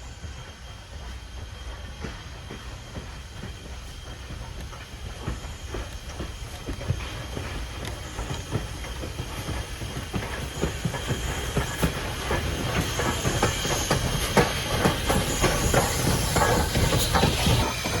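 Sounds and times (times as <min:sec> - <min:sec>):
steam hiss: 0:00.0 - 0:18.0
steam train rumbling: 0:00.0 - 0:18.0
clanks and wheel clicks: 0:02.0 - 0:18.0.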